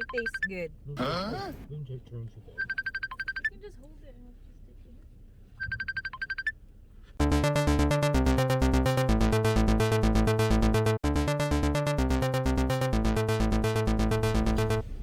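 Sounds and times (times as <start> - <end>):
electronic music with synthesizer: 7.2 - 14.8.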